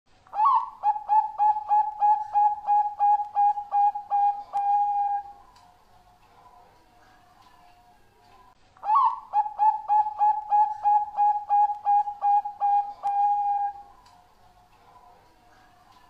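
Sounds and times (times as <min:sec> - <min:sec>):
dove cooing: 0:00.3 - 0:05.5, 0:08.8 - 0:14.0.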